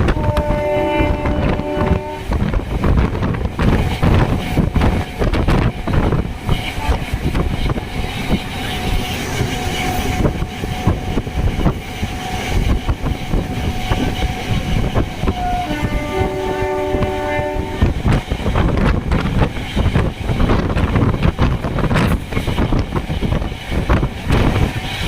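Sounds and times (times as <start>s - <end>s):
train horn chord: 0.0s - 2.4s, 15.0s - 18.1s
train wheels clattering on rails: 0.0s - 25.0s.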